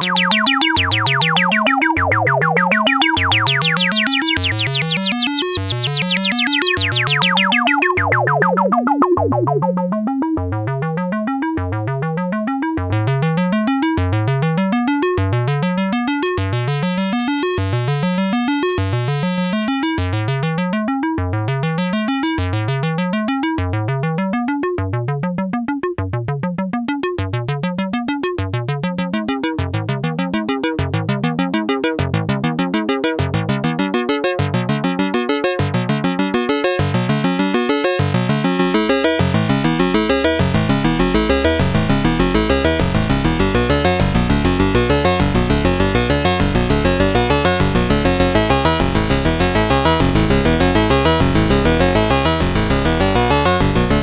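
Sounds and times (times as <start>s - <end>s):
synthesizer note pattern sweeping upward: 0.0s - 10.6s, 39.8s - 54.0s.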